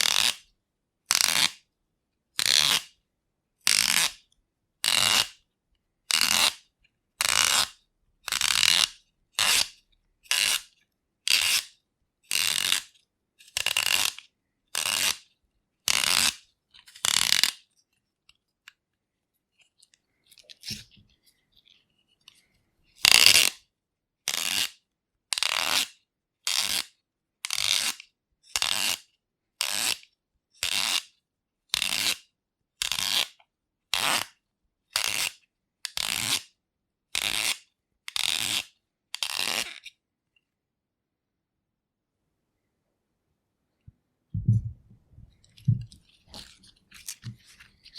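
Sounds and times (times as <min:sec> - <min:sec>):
faint handling noises: 0:44.4 - 0:47.9.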